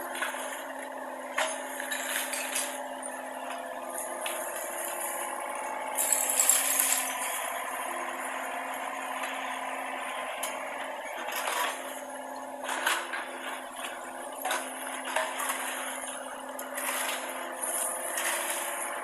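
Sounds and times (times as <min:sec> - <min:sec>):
excavator engine running: 0:00.0 - 0:19.0.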